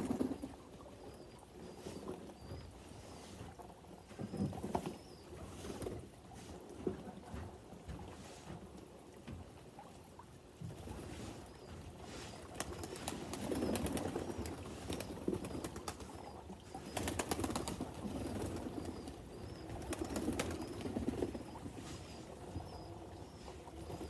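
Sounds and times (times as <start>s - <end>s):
pigeons flapping wings: 0.0s - 0.6s, 12.5s - 21.6s.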